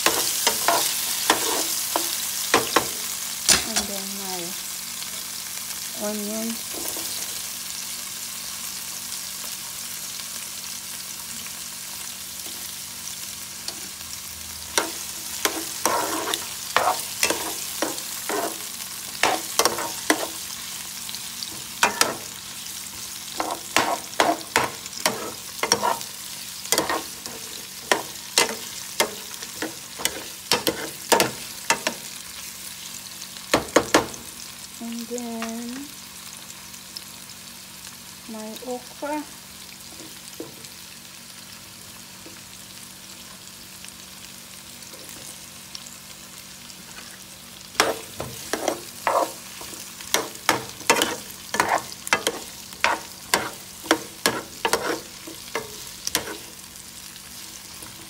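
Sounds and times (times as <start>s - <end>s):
sausages sizzling in a frying pan: 0.0s - 58.0s
utensil scraping and knocking pan: 23.4s - 26.0s, 47.8s - 56.4s.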